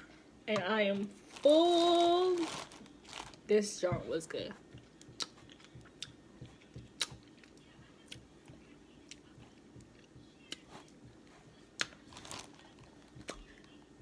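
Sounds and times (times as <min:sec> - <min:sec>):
person chewing: 0:04.6 - 0:08.3.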